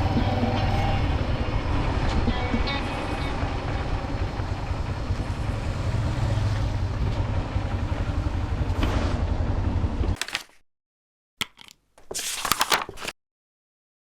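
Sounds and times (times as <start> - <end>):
heavy engine rumble: 0.0 - 10.1.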